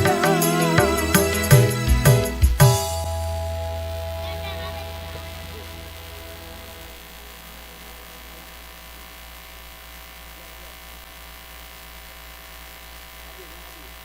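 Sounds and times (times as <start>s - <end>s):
music: 0.0s - 7.6s
faint hiss: 0.0s - 14.0s
electrical mains hum: 2.7s - 14.0s.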